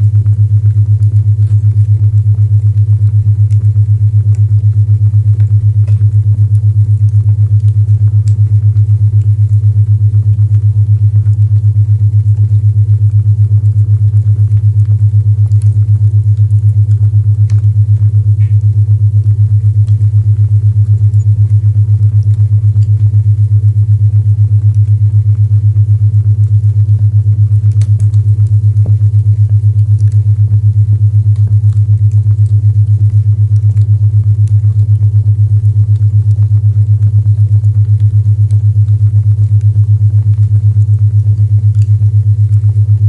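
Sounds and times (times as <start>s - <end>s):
low pulsing hum tone: 0.0s - 43.0s
low pulsing isochronic tone: 15.6s - 24.0s.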